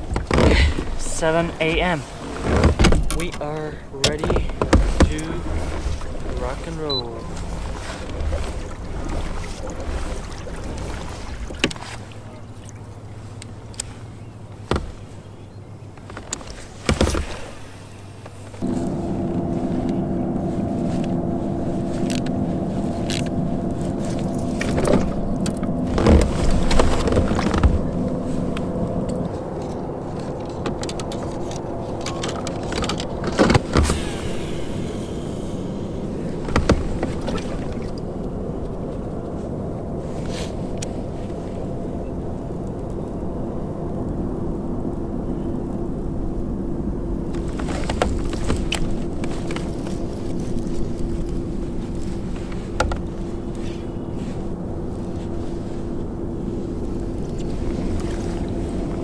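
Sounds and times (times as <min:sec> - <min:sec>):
motor humming: 0:18.2 - 0:38.5.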